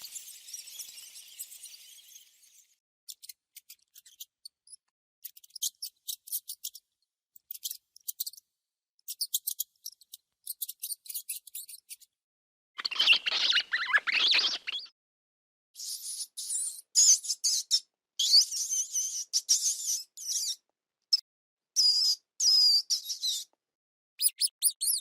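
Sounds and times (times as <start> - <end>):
parrot chirping: 12.8 - 14.9, 24.2 - 25.0.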